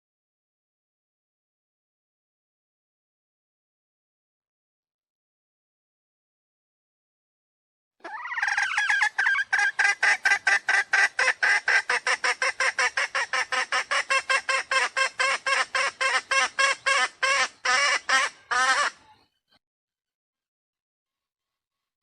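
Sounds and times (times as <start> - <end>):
harsh jungle fowl calls: 8.0 - 19.3.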